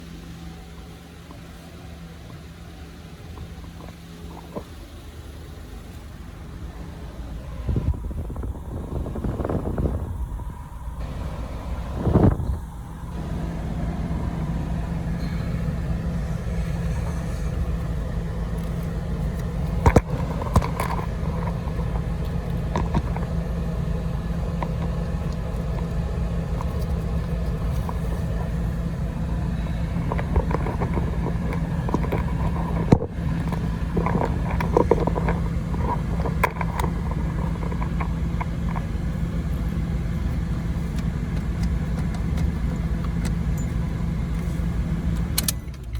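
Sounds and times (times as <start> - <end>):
car engine idling: 0.0 - 45.9.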